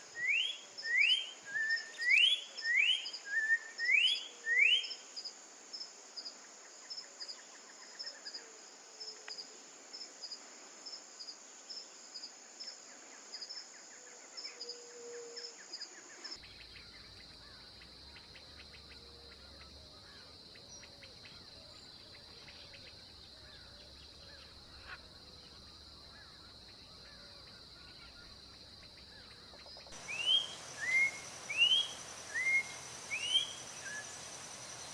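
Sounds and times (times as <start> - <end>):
bird singing whistled notes: 0.1 - 5.0, 16.4 - 34.9
steady insect drone: 4.6 - 34.9
pulsing insect drone: 16.4 - 34.9.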